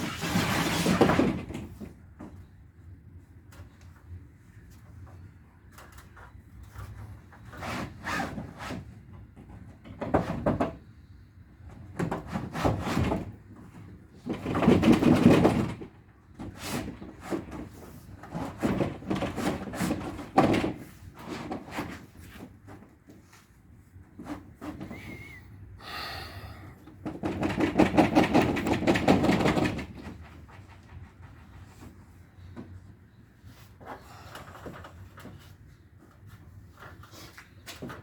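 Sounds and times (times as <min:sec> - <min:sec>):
building materials scraping and knocking: 0:00.0 - 0:01.9, 0:12.0 - 0:23.5, 0:27.0 - 0:32.8.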